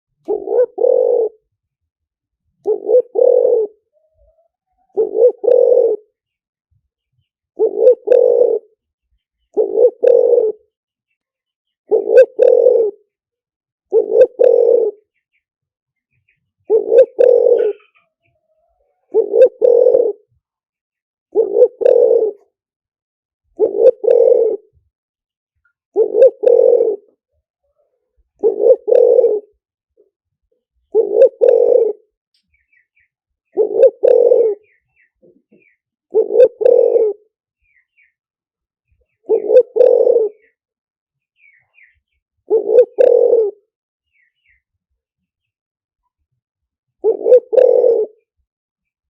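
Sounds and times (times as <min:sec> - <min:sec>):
small birds chirping: 0:00.2 - 0:01.4, 0:02.5 - 0:13.3, 0:13.9 - 0:20.6, 0:21.3 - 0:22.6, 0:25.6 - 0:29.6, 0:30.5 - 0:46.2
dove cooing: 0:00.2 - 0:01.5, 0:02.6 - 0:06.2, 0:07.6 - 0:08.8, 0:09.5 - 0:10.8, 0:11.8 - 0:13.1, 0:13.9 - 0:15.2, 0:16.6 - 0:20.4, 0:21.3 - 0:22.6, 0:23.5 - 0:24.8, 0:25.9 - 0:29.6, 0:30.9 - 0:32.2, 0:33.5 - 0:37.4, 0:39.1 - 0:40.6, 0:41.5 - 0:43.7, 0:47.0 - 0:48.3.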